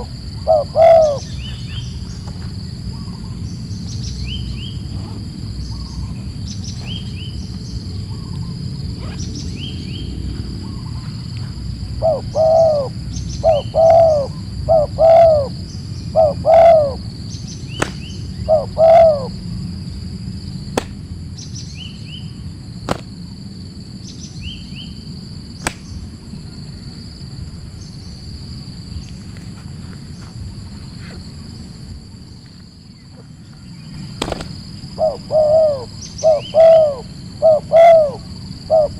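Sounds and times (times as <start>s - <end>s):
dove cooing: 0.0s - 1.8s, 10.3s - 17.1s, 18.3s - 19.4s, 34.0s - 38.9s
bird chirping: 0.0s - 4.9s, 5.6s - 19.4s, 32.9s - 38.9s
high insect drone: 0.0s - 38.9s.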